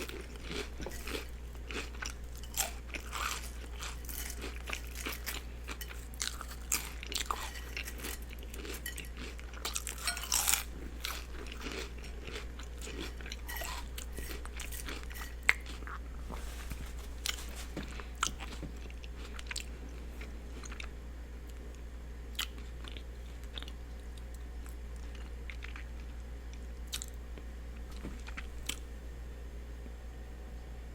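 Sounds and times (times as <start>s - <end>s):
chewing and biting sandwich: 0.0s - 20.9s
steady low hum: 0.0s - 30.9s.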